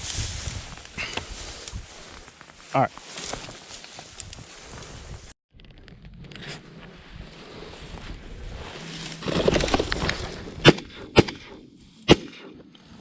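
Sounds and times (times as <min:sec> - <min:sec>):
shotgun shot: 0:10.6 - 0:12.6.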